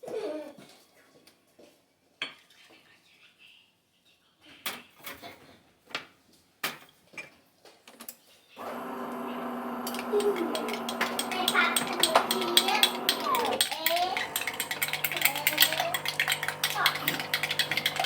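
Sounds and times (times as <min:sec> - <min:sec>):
coffee machine humming: 0:08.6 - 0:18.0
cutlery and crockery clinking: 0:09.1 - 0:18.0.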